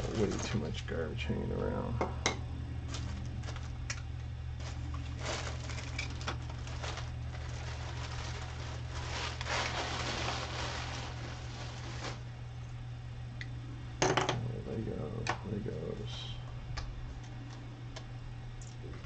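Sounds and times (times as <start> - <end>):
packaging rustling: 0.0 - 0.8, 2.9 - 3.8, 4.5 - 12.3
low electrical hum: 0.0 - 19.0.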